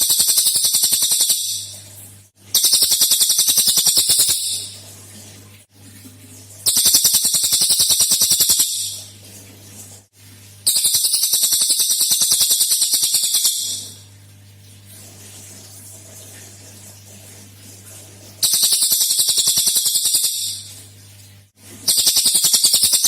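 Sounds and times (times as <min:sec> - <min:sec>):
songbird rapid high notes: 0:00.0 - 0:01.7, 0:02.6 - 0:04.8, 0:06.7 - 0:09.0, 0:10.7 - 0:14.0, 0:18.4 - 0:20.6, 0:21.9 - 0:23.0.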